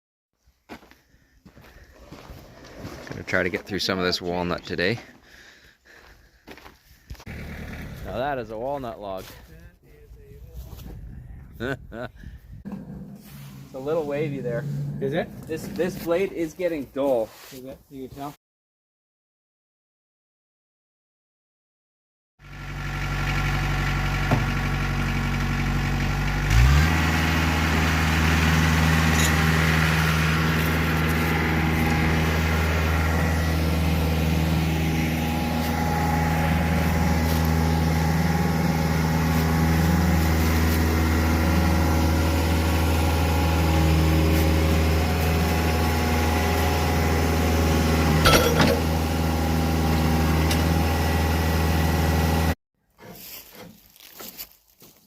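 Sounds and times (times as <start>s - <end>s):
sawmill engine running: 1.6s - 9.4s, 12.7s - 16.5s, 22.4s - 52.6s.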